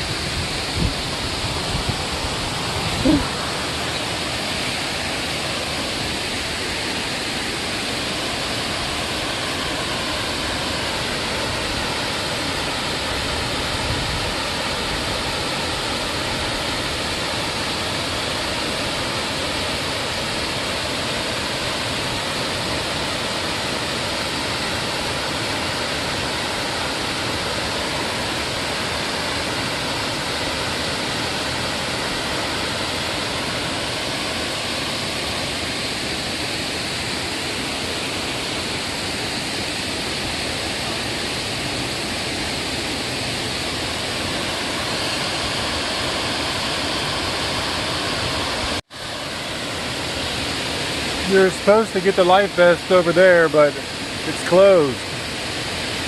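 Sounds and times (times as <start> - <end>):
waterfall roaring: 0.0 - 56.0.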